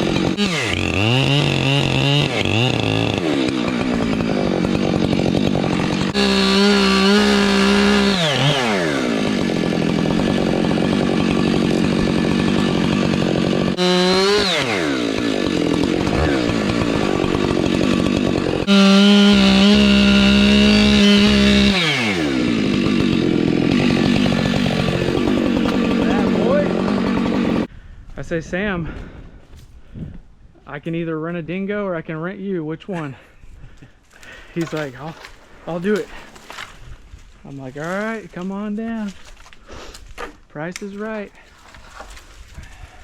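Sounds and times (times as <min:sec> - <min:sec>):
chainsaw revving at full throttle: 0:00.0 - 0:27.7.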